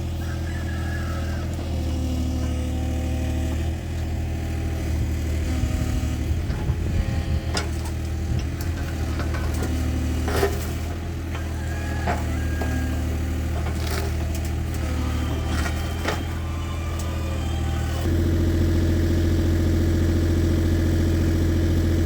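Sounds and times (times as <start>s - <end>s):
chainsaw engine idling: 10.9s - 22.0s.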